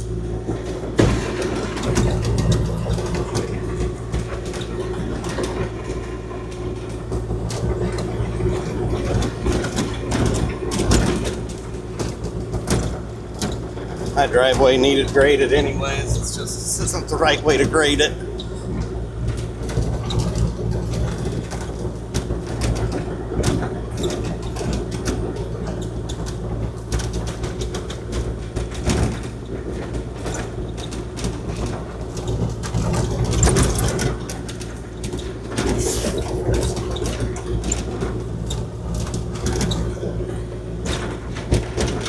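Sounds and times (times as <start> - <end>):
diesel engine running: 13.9 - 19.7, 32.8 - 39.4.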